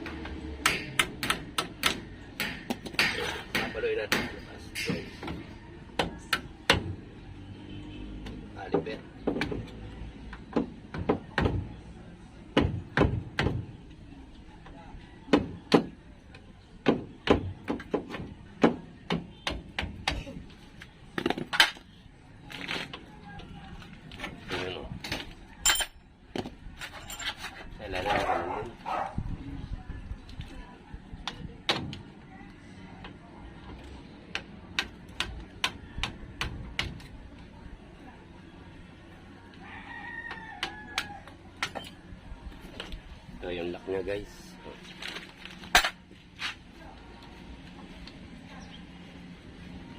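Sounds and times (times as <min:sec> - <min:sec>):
rooster crowing: 0:39.6 - 0:41.4.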